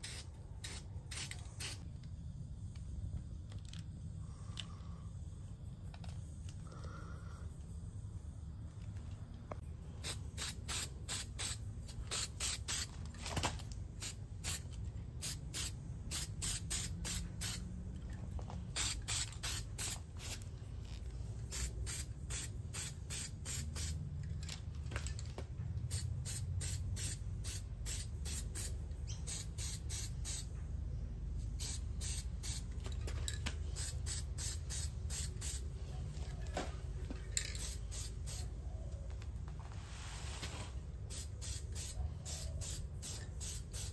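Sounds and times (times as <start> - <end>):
spray bottle squirting: 0.0 - 1.8, 10.0 - 13.0, 18.7 - 20.4, 25.9 - 30.5
low steady rumble: 29.8 - 42.1.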